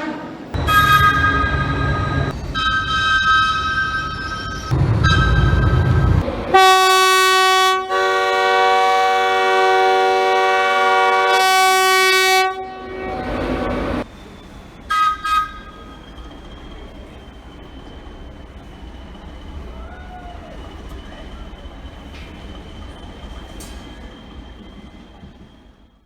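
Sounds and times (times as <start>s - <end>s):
train horn blast: 0.0s - 2.2s, 6.5s - 14.0s, 14.9s - 15.7s
train rumble: 0.0s - 26.0s.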